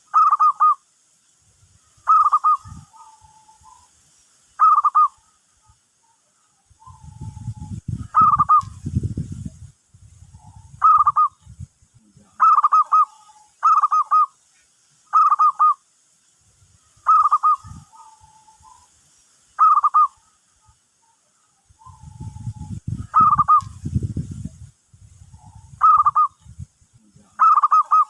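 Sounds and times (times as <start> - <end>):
dove cooing: 0.0 - 0.8, 2.1 - 3.9, 4.6 - 5.4, 6.8 - 8.8, 10.3 - 11.4, 12.4 - 14.3, 15.1 - 15.8, 17.0 - 18.8, 19.6 - 20.4, 21.8 - 23.8, 25.3 - 26.4, 27.4 - 28.0.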